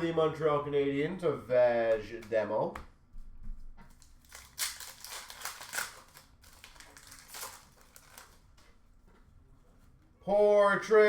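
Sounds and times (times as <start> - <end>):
cards and packaging rustling: 3.9 - 8.8.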